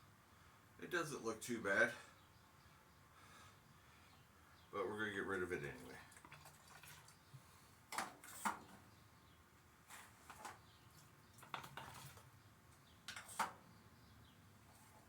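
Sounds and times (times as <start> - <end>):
light clicks and knocks of siphon: 10.3 - 12.3, 13.0 - 13.6.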